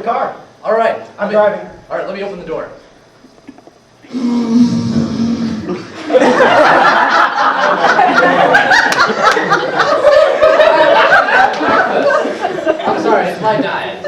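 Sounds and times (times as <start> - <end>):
person making droning sound: 4.0 - 6.0
audience laughter: 5.6 - 13.7.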